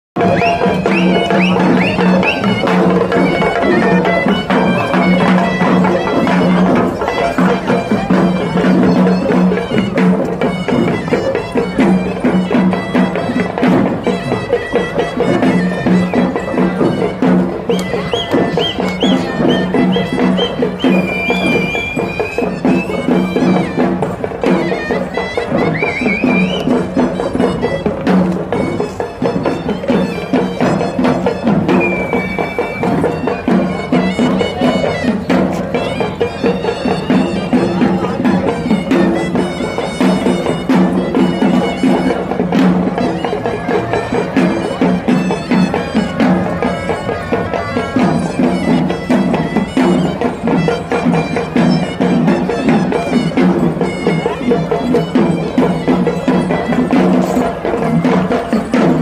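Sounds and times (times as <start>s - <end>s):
reedy wind instrument melody: 0.2s - 59.0s.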